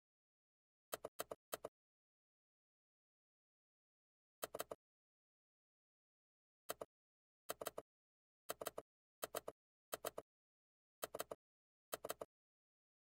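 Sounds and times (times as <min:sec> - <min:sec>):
clusters of sharp clicks: 0:11.0 - 0:12.3.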